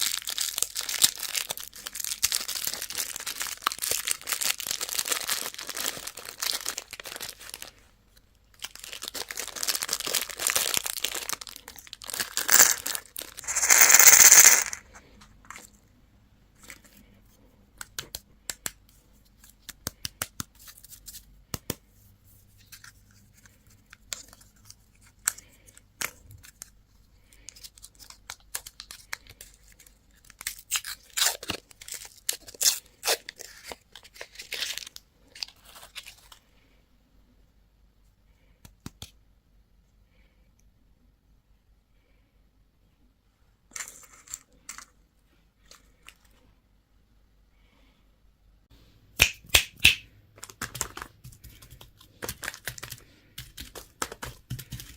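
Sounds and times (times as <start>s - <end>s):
wrapper crinkling and tearing: 0.0s - 7.8s, 8.5s - 14.9s, 27.5s - 36.4s.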